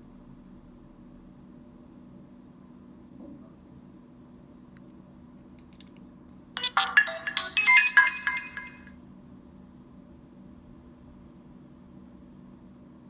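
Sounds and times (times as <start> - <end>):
phone ringtone chiming notes: 6.6 - 8.9.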